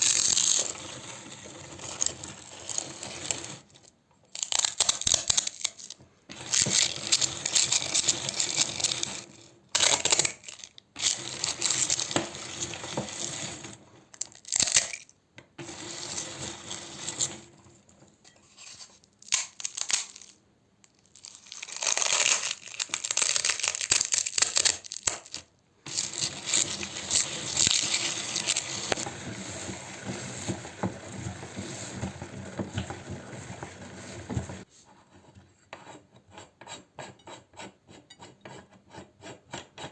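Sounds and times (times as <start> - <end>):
meat grinder crunching cone: 25.9 - 34.6.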